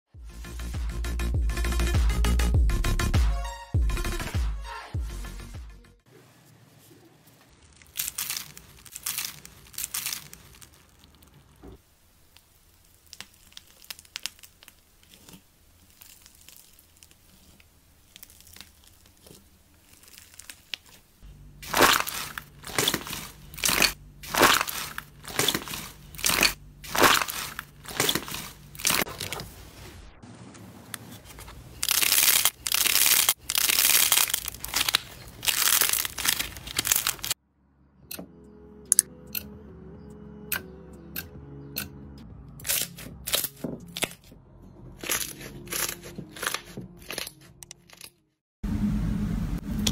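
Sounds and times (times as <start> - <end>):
crunchy slime crackling: 7.2 - 29.4, 31.2 - 37.4, 45.0 - 48.1.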